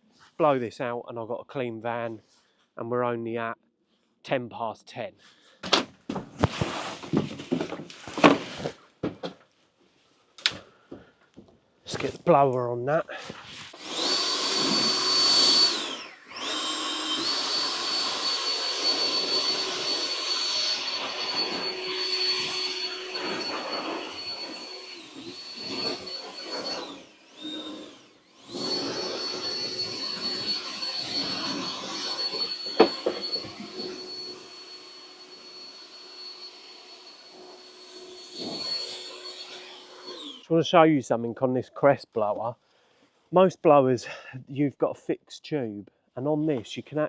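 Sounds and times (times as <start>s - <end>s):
leaf blower fan whine: 13.3s - 40.4s.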